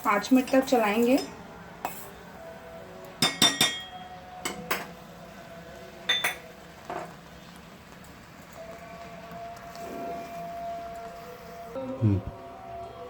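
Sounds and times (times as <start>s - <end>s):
spoon clinking against pan: 3.2s - 4.9s, 6.1s - 7.0s.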